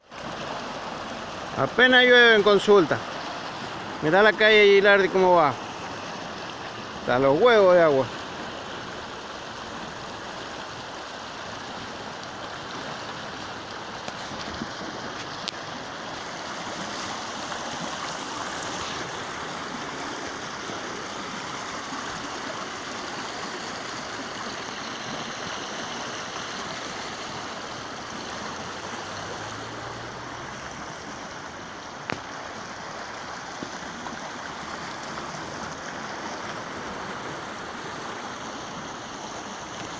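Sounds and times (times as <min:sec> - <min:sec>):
water rushing along a street: 0:00.0 - 0:39.9.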